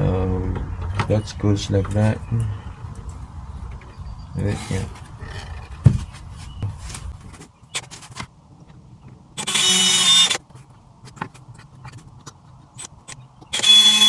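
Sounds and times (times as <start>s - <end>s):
handling clicks and knocks: 5.8s - 9.5s
electric drill whine: 9.4s - 10.4s, 13.5s - 14.0s.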